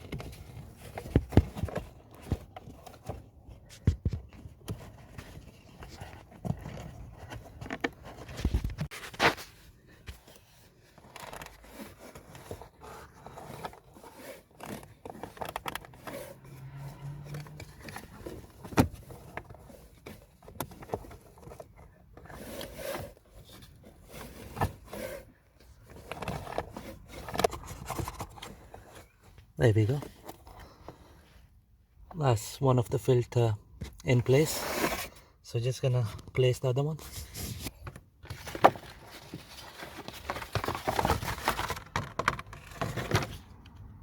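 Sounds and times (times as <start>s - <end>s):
filter scraping against plastic: 0.0s - 31.2s.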